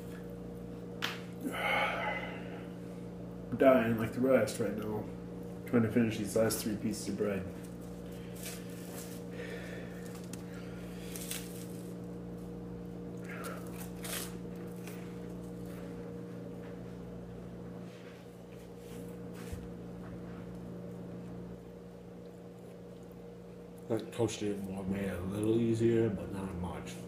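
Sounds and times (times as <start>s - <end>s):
low electrical hum: 0.0s - 27.0s
person chewing toast: 13.1s - 15.8s.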